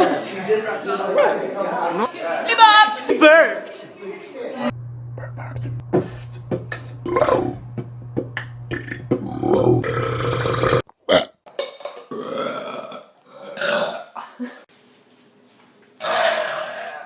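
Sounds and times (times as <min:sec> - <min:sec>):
low hum: 0:04.7 - 0:10.8
people burping: 0:06.0 - 0:11.4, 0:12.1 - 0:14.5.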